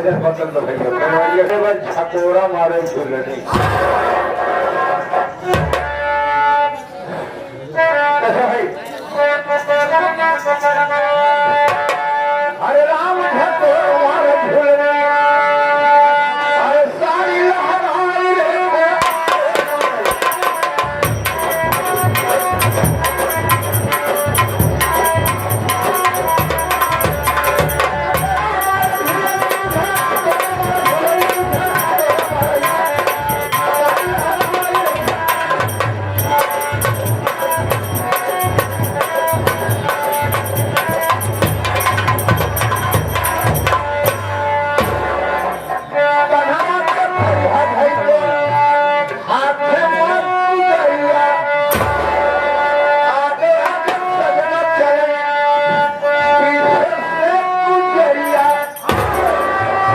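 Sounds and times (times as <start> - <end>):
fast hand drumming: 19.0 - 45.7, 58.3 - 59.9
folk melody: 19.1 - 49.3, 58.0 - 59.9.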